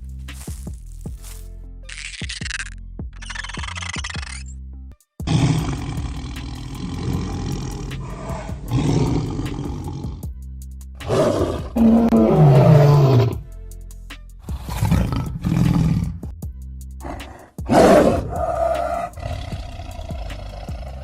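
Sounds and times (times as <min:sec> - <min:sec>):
background music: 0:00.0 - 0:21.0
large animal roaring: 0:05.3 - 0:10.2, 0:11.0 - 0:13.4, 0:17.0 - 0:21.0.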